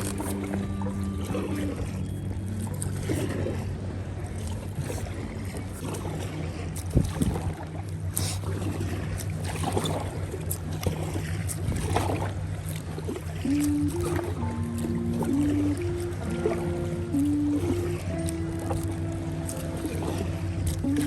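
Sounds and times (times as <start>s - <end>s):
paddle strokes and water splashes: 0.0s - 21.0s
steady low hum: 0.0s - 21.0s.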